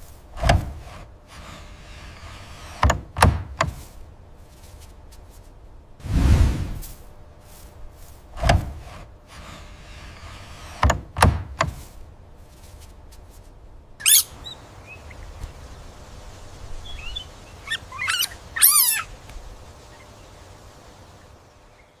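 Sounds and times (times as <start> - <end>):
dull thuds: 2.8 - 4.0, 8.3 - 9.0, 10.8 - 12.0
sweeping chirping animal calls: 14.0 - 22.0.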